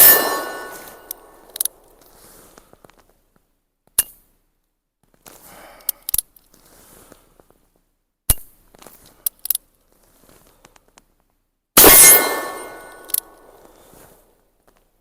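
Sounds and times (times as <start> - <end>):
faint rustling: 6.4 - 7.8.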